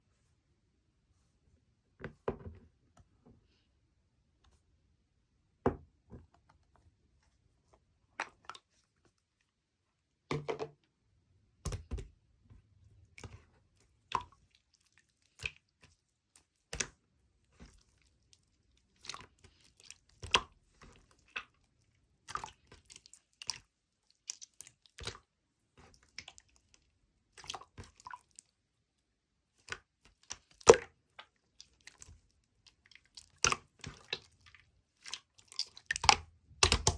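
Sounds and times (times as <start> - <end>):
food being chewed and crunched: 31.5 - 36.9.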